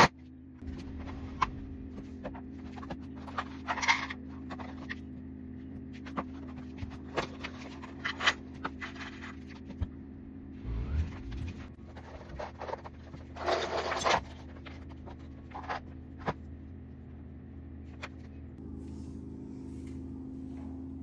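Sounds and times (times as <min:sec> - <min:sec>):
steady low hum: 0:00.0 - 0:21.0
object scraping: 0:10.6 - 0:11.8.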